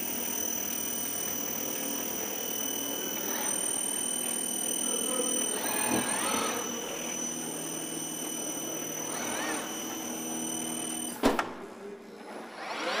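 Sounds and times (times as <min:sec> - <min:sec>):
servo motor whines: 0:00.0 - 0:11.2
robot electrical hum with whine: 0:00.0 - 0:11.4.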